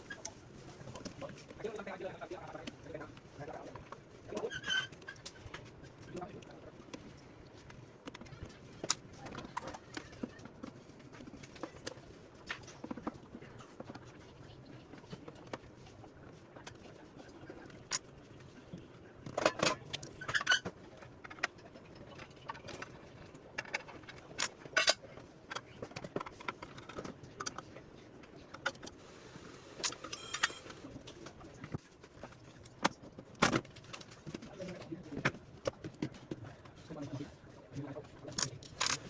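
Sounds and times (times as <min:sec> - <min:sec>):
tools and parts clinking: 0:19.2 - 0:27.7, 0:29.8 - 0:36.4, 0:37.8 - 0:39.0.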